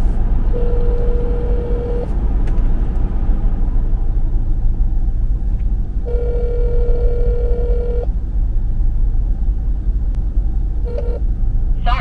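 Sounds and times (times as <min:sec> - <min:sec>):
vehicle rumble: 0:00.0 - 0:12.0
telephone ringback tone: 0:00.6 - 0:02.0, 0:06.1 - 0:08.1.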